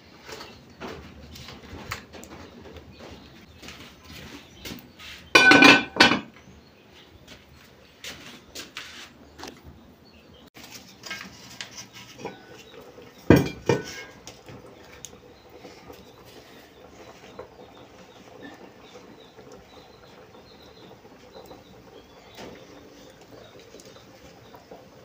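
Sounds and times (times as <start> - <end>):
metal pots clanking: 5.3 - 6.4, 10.6 - 25.0.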